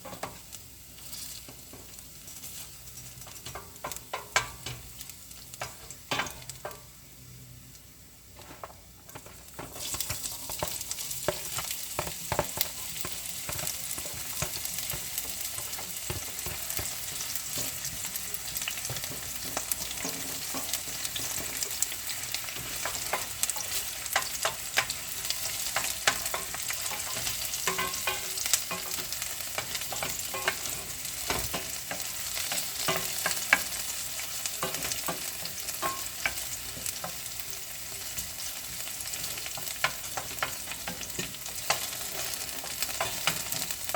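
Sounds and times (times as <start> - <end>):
food sizzling in a pan: 0.0 - 43.9
utensil scraping a pan: 8.4 - 37.3.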